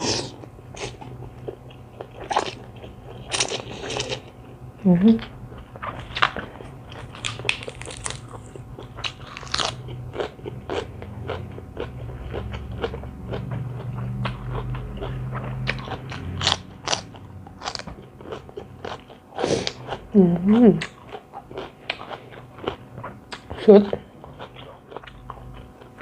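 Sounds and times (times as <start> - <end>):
chewing and crunching food: 0.0 - 26.0.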